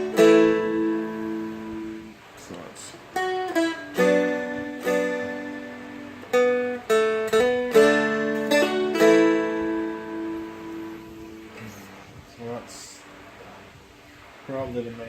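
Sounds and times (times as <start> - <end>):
dulcimer picking slow melody: 0.0 - 2.1, 3.2 - 11.9.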